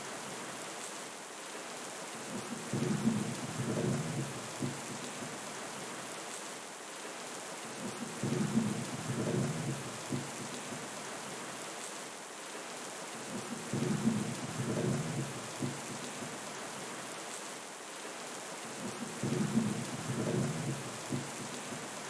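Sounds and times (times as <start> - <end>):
steady rain: 0.0 - 22.0.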